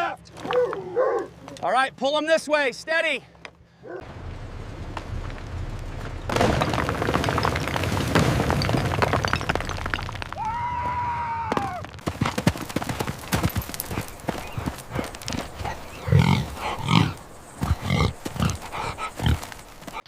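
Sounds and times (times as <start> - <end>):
rock and debris crashing: 4.1 - 19.8
sharp cracks and knocks: 4.9 - 15.6
buffalo crying: 13.8 - 20.0.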